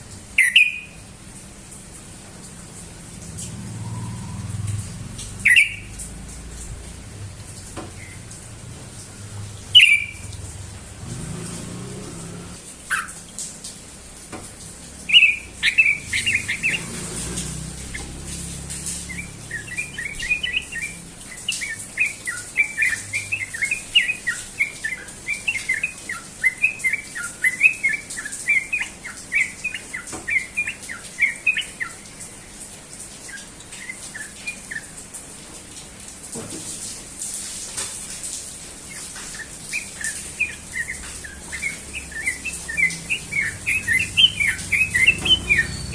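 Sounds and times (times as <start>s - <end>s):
bird bubbling chattering song: 0.4s - 1.0s, 5.4s - 6.3s, 7.9s - 12.1s, 15.0s - 32.4s, 33.3s - 35.0s, 38.9s - 45.9s.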